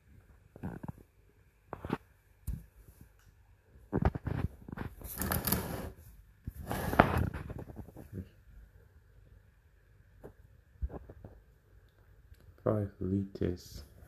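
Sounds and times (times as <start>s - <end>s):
rustling and clatter: 3.8s - 8.4s.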